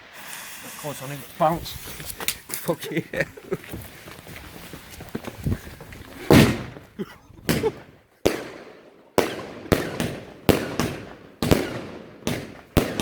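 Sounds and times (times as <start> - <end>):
firework cake bangs echoing: 6.2 - 13.0.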